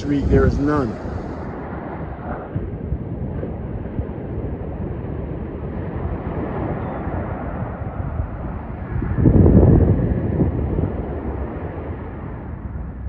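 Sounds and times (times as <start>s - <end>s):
ocean surf: 0.0s - 2.5s
wind buffeting microphone: 0.0s - 13.0s.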